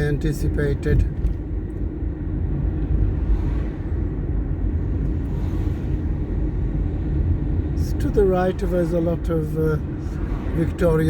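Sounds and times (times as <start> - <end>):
car engine and tyre rumble: 0.0 - 11.0.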